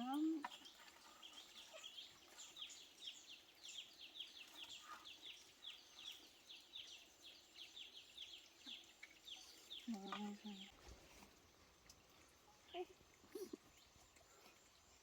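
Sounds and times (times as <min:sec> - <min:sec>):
faint bird chirping: 0:00.0 - 0:10.8.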